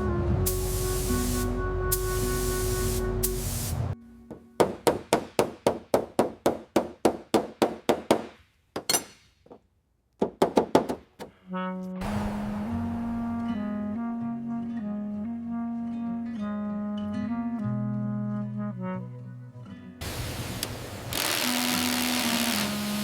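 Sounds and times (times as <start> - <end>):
spray hissing: 0.0 - 4.0, 20.0 - 23.0
background music: 0.0 - 5.4, 11.5 - 20.0.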